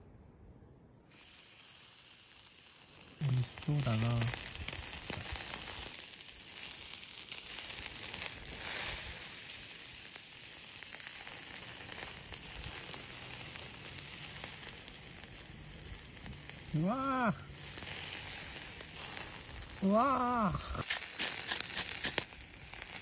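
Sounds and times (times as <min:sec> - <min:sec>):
beef sizzling on grill: 0:01.1 - 0:23.0
fat crackling and popping: 0:01.6 - 0:23.0.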